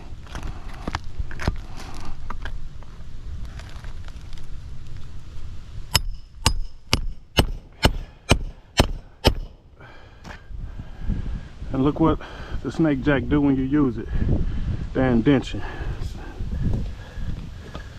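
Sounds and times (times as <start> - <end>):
hammer strikes: 6.0 - 9.6.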